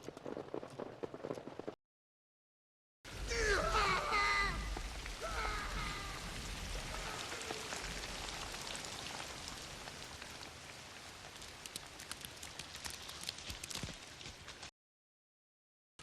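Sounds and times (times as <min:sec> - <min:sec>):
steady rain hiss: 0:03.1 - 0:14.7.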